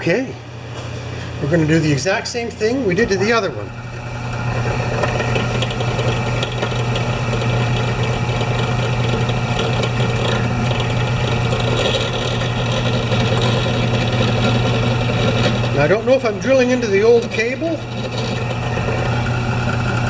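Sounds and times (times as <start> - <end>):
electric drill drilling metal: 3.3 - 20.0.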